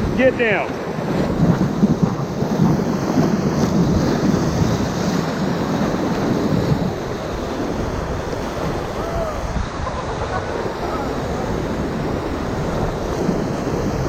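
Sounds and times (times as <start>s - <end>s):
whitewater churning: 0.0s - 14.0s
wind buffeting microphone: 0.0s - 14.0s.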